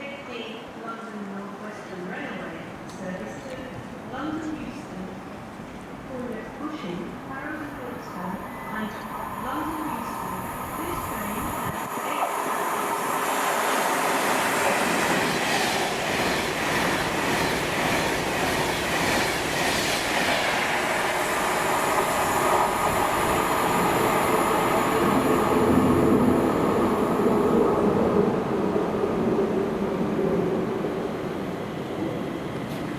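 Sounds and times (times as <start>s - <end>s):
train wheels rumbling on rails: 7.8s - 32.9s.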